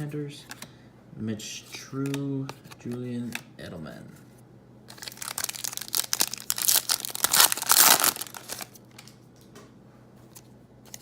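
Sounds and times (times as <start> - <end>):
wrapper crinkling: 4.9 - 9.1.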